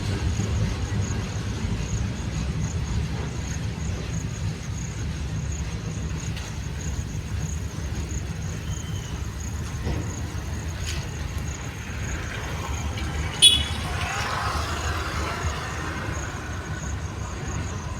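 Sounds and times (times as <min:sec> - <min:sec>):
train rumbling: 0:00.0 - 0:17.9.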